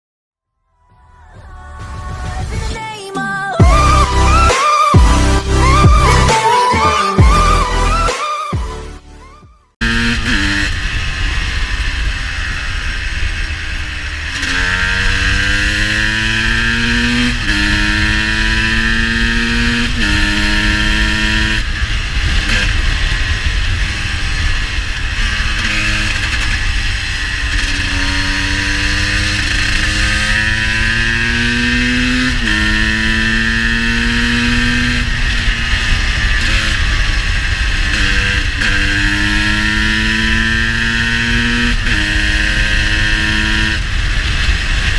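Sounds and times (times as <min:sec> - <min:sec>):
motorcycle engine accelerating: 0:03.6 - 0:44.9
low wind rumble: 0:09.9 - 0:44.9.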